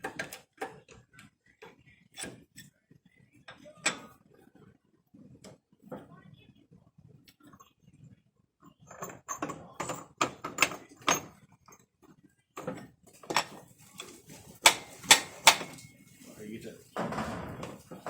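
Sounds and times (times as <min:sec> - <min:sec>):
metal knocking and clanking: 0:09.0 - 0:11.4, 0:12.6 - 0:15.9.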